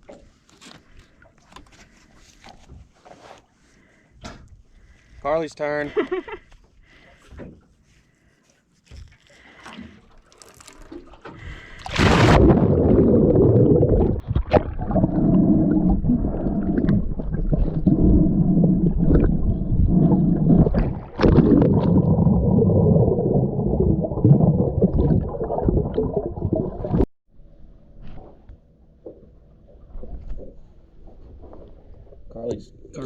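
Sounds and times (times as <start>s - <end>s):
water splash: 9.8s - 27.1s
underwater rumbling and gurgling: 11.1s - 27.1s, 27.9s - 33.0s.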